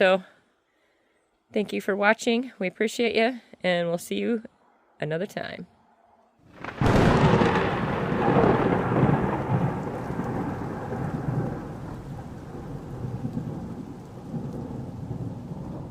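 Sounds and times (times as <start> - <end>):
rain: 6.5 - 15.9
thunder rumbling: 6.5 - 15.9.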